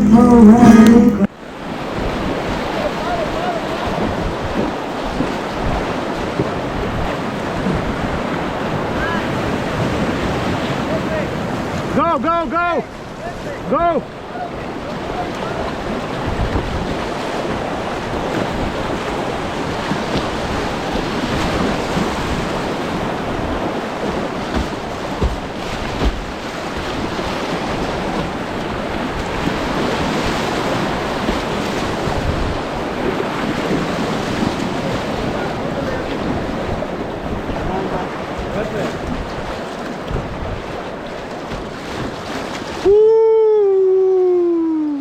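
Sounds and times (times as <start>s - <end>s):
wind buffeting microphone: 15.0s - 42.3s.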